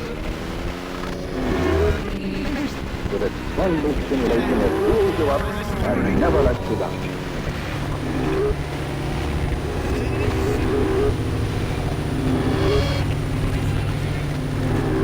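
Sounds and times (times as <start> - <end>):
motor engine running: 0.0 - 15.0.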